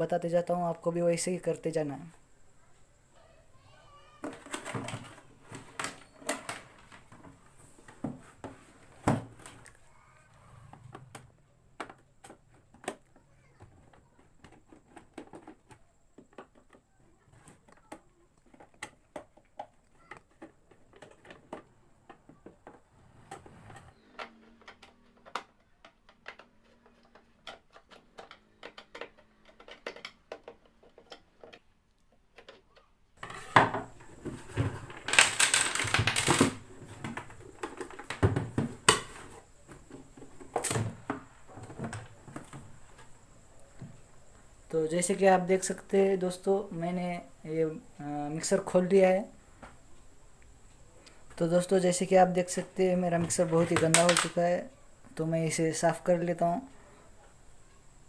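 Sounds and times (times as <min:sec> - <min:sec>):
plastic and metal parts clicking: 0:10.8 - 0:22.8, 0:23.8 - 0:33.4.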